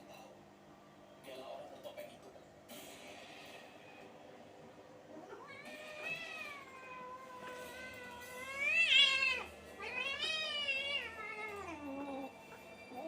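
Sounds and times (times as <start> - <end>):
cat yowling: 5.1 - 12.4.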